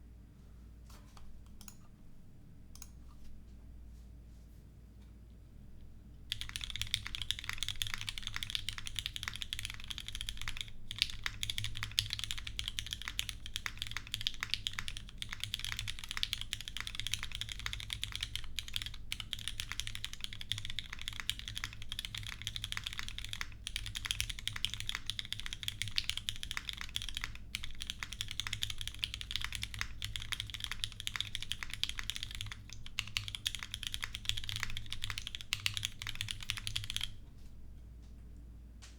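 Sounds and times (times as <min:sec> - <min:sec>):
fast mechanical keyboard typing: 0:06.3 - 0:37.2.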